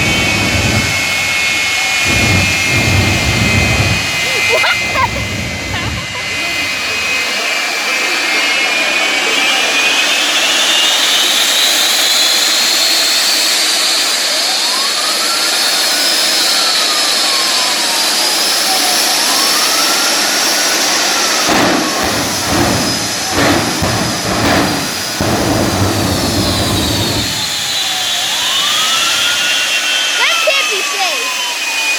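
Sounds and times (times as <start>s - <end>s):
bursts of low rumble: 0.0s - 7.3s, 21.4s - 28.6s
turbine engine whine: 0.0s - 31.9s.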